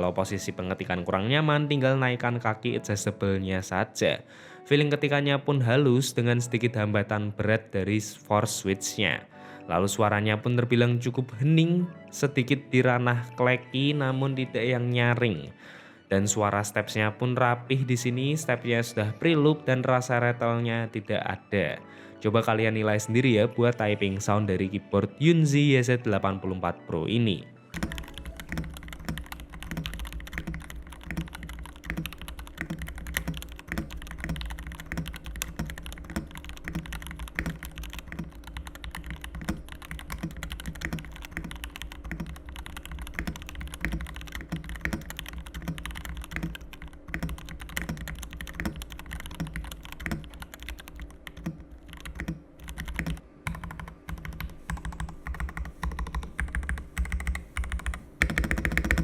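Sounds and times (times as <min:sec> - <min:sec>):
mechanical keyboard typing: 0:27.8 - 0:59.0.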